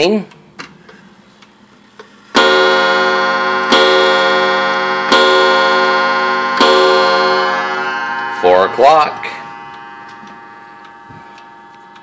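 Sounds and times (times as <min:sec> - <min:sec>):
clock striking: 0:02.4 - 0:12.0.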